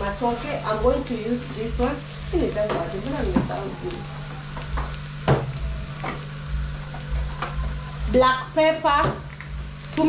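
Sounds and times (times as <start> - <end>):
onions sizzling in a pan: 0.0 - 10.0
steady low hum: 0.0 - 10.0.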